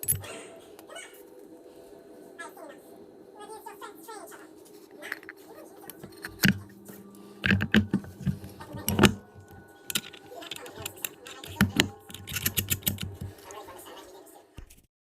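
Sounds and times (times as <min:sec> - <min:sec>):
metal parts and tools clinking: 0:00.0 - 0:00.2, 0:05.1 - 0:06.6, 0:07.4 - 0:13.3.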